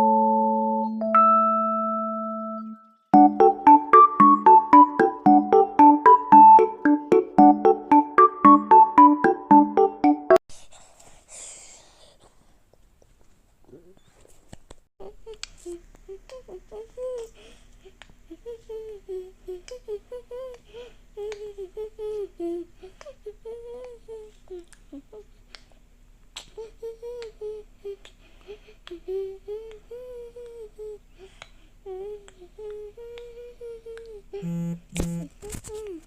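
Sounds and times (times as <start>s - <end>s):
person humming a tune: 3.2s - 10.4s, 18.3s - 20.6s, 26.6s - 28.1s, 28.8s - 31.0s, 31.9s - 36.0s.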